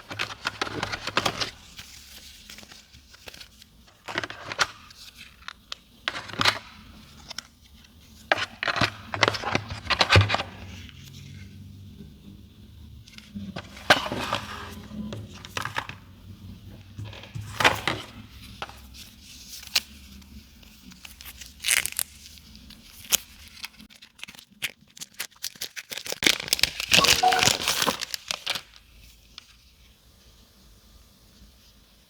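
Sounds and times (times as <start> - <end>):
plastic wrap tearing and crinkling: 21.2 - 28.8.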